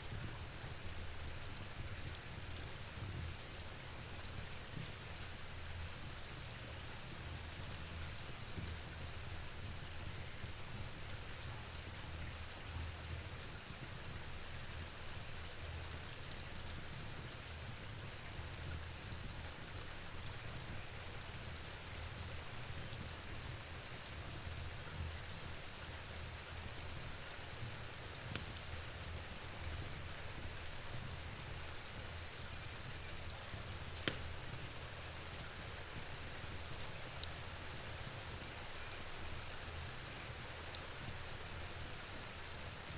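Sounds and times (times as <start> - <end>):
steady falling rain: 0.0 - 42.9
faint ticks of drops: 24.5 - 42.9.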